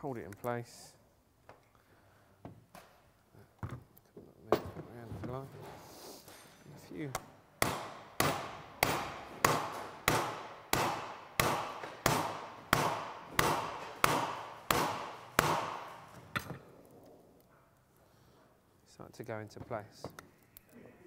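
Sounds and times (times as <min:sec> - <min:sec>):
hammer striking metal nut: 0:07.6 - 0:16.6.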